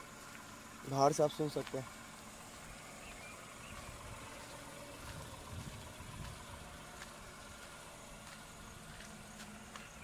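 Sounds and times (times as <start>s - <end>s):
car engine idling quietly: 0.0s - 10.0s.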